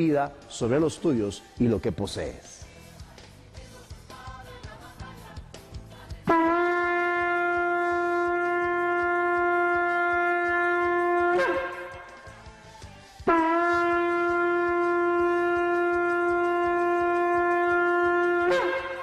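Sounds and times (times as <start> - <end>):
shofar blasts: 6.3 - 12.4, 13.2 - 19.0.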